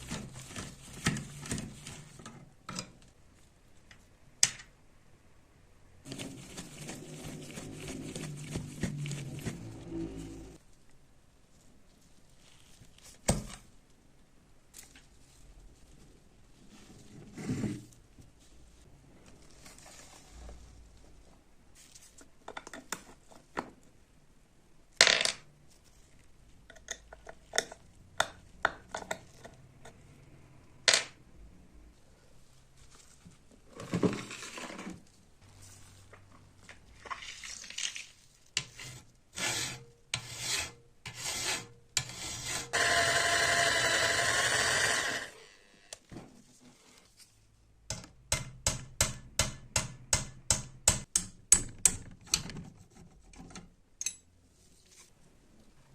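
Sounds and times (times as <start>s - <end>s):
scraping strokes: 6.0s - 10.6s.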